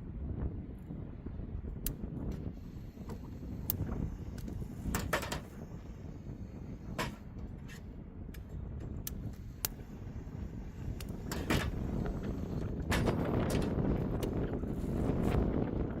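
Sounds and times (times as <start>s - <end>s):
strong wind buffeting: 0.0s - 16.0s
sharp knocks and rattles: 4.8s - 5.8s, 10.5s - 14.4s.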